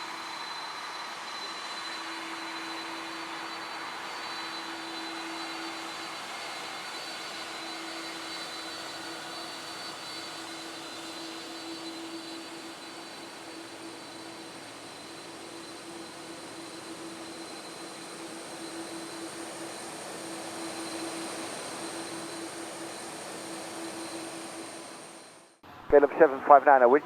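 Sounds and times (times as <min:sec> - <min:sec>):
jet engines idling: 0:00.0 - 0:27.0.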